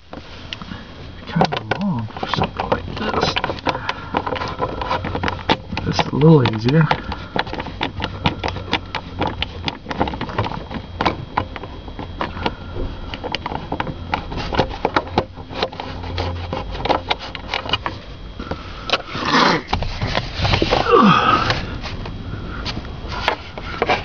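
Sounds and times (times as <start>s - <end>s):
steady low hum: 0.0s - 24.0s
tools clicking and knocking: 1.3s - 18.0s.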